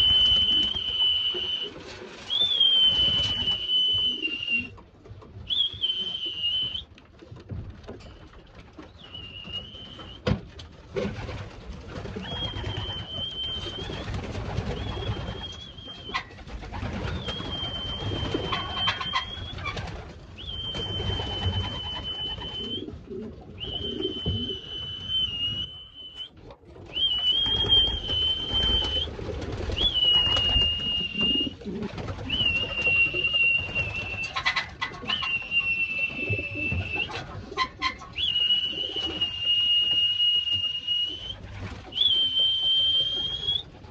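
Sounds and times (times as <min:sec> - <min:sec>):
high whistle notes: 0:00.0 - 0:04.7, 0:23.6 - 0:26.3, 0:29.8 - 0:31.6, 0:35.0 - 0:37.2, 0:38.2 - 0:43.6
pigeons cooing: 0:12.1 - 0:25.1, 0:26.8 - 0:39.4.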